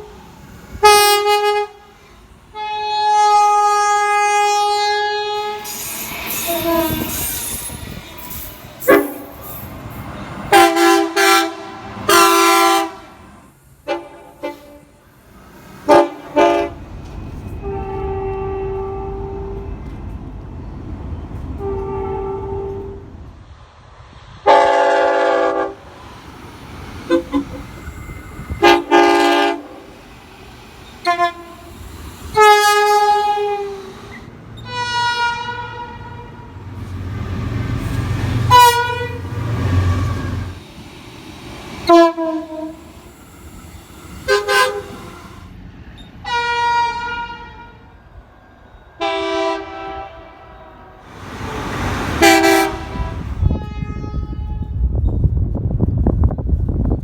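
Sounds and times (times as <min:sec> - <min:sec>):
train rumbling: 0:00.0 - 0:57.0
locomotive air horn blasts: 0:00.8 - 0:07.5, 0:08.8 - 0:09.4, 0:10.5 - 0:15.0, 0:15.8 - 0:16.8, 0:17.6 - 0:19.8, 0:21.6 - 0:23.1, 0:24.4 - 0:25.8, 0:27.1 - 0:27.6, 0:28.6 - 0:29.9, 0:31.0 - 0:31.7, 0:32.3 - 0:36.6, 0:38.4 - 0:40.5, 0:41.8 - 0:43.0, 0:44.2 - 0:45.4, 0:46.2 - 0:47.9, 0:49.0 - 0:54.9.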